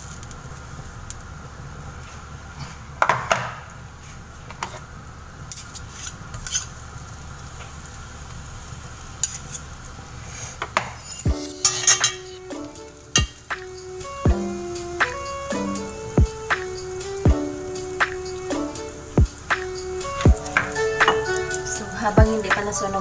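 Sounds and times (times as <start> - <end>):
butter sizzling in a hot pan: 0.0 - 23.0
utensil scraping a pan: 10.3 - 12.4.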